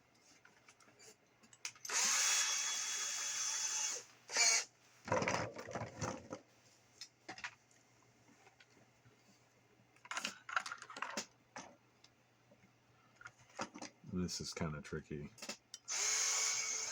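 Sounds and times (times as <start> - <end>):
drill boring into plastic: 1.9 - 4.7, 15.9 - 16.9
electric drill whining: 1.9 - 4.7, 15.9 - 16.9.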